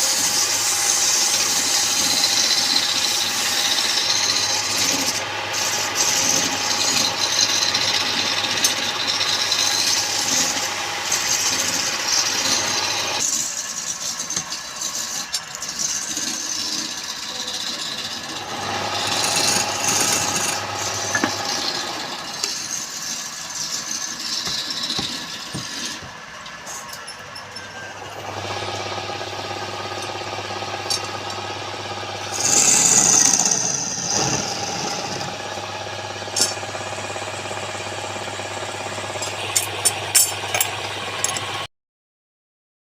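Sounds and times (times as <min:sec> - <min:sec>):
wood lathe running: 0:00.0 - 0:26.3, 0:27.7 - 0:41.7
turning tool scraping wood: 0:00.0 - 0:26.8, 0:32.2 - 0:35.6.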